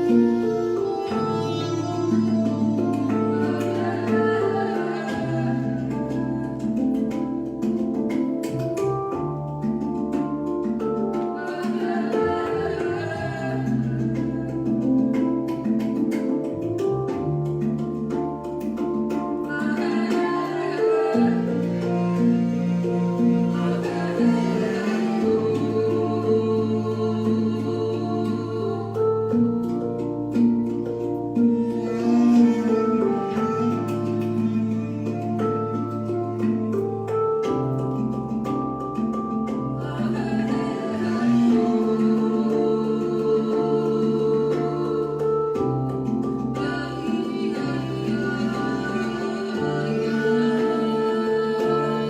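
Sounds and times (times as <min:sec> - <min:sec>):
singing: 0:03.3 - 0:06.0, 0:23.5 - 0:29.1, 0:39.8 - 0:45.6, 0:46.6 - 0:52.0.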